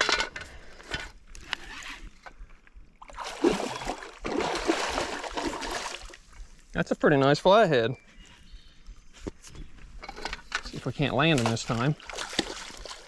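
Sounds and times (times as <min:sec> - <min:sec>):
fish thrashing and splashing: 0:03.0 - 0:06.2, 0:11.4 - 0:13.0.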